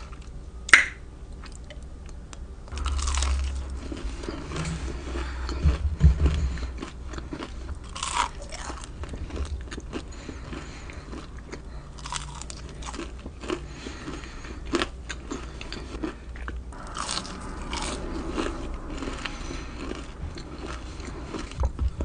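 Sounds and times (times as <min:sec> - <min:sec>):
low thumps: 0:02.7 - 0:07.9, 0:16.7 - 0:22.0
crunchy food chewing: 0:02.7 - 0:21.8.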